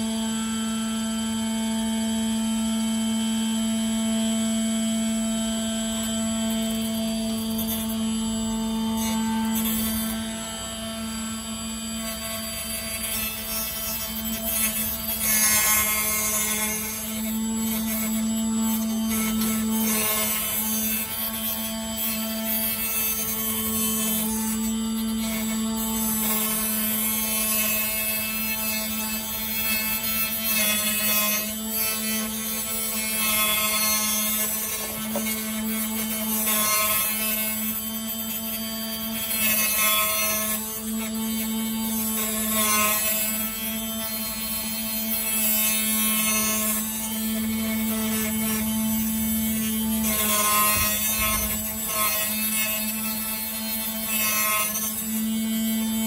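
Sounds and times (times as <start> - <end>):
cutting wire rasping through glass: 11.8 - 56.0.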